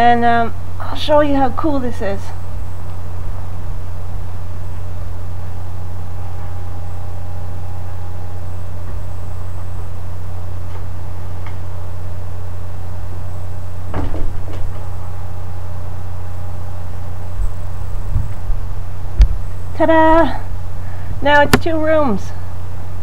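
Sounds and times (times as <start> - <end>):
steady low hum: 0.0 - 23.0
doors sliding shut: 13.9 - 15.0.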